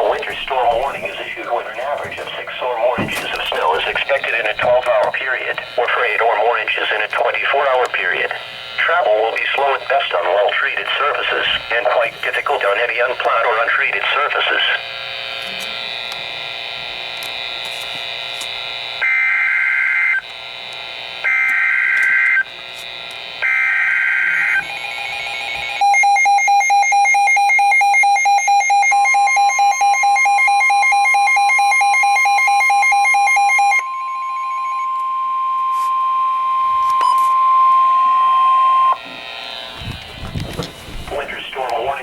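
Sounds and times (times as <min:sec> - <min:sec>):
radio hiss: 0:00.0 - 0:15.8, 0:38.8 - 0:42.0
loud pulsing alarm tone: 0:00.0 - 0:42.0
steady high warning tone: 0:00.0 - 0:42.0.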